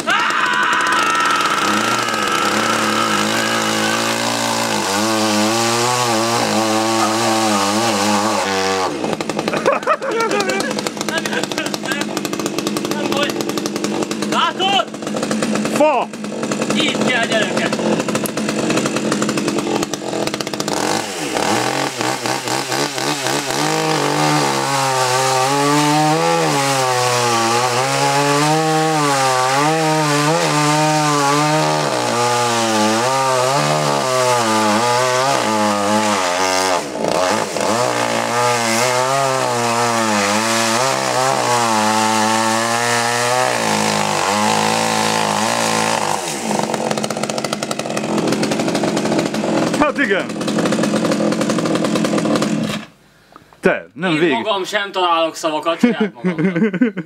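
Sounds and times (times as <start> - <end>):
chainsaw cutting wood: 0.0 - 53.0.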